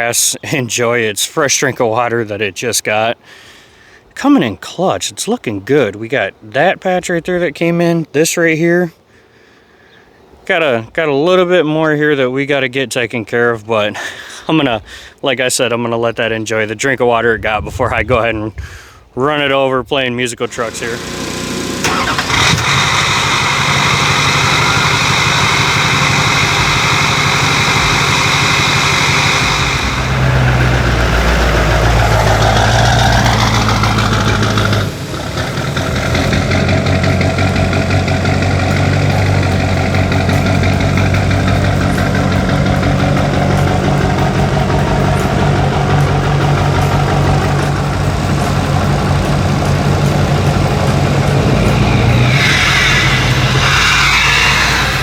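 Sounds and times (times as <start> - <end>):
truck engine idling: 20.5 - 55.0.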